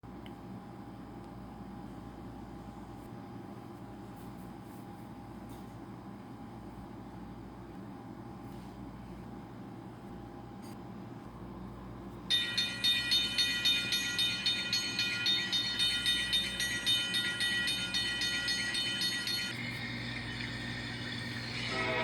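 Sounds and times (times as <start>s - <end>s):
low train rumble: 12.3s - 22.0s
railroad bell ringing rapidly: 12.3s - 22.0s.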